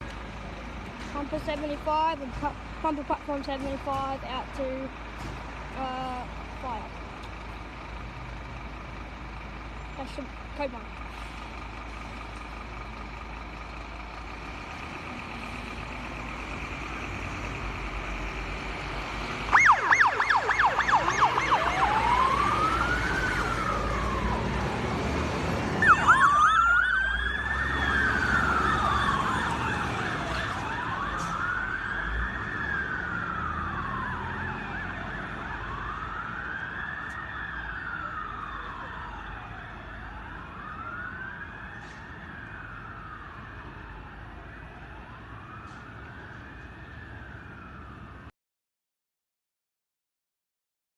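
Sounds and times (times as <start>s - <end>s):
truck engine rumble: 0.0s - 48.3s
fire engine siren: 11.2s - 48.3s.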